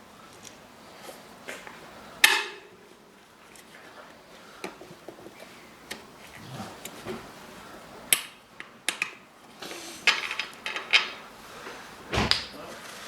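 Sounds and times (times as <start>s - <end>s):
hand tools clinking on metal: 1.6s - 3.7s, 8.1s - 11.8s.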